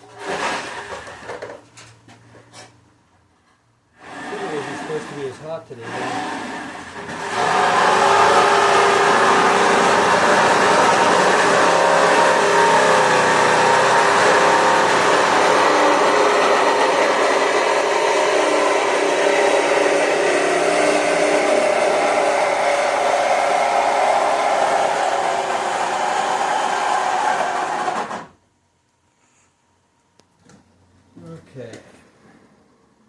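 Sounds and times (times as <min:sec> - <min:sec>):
electric motor and fan whir: 0:04.0 - 0:28.4.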